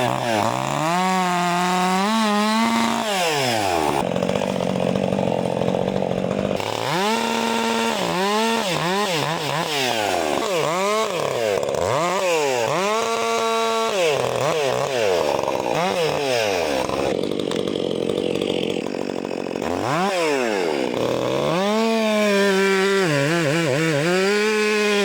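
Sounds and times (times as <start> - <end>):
chainsaw cutting wood: 0.0 - 25.0
chainsaw engine revving: 0.0 - 25.0.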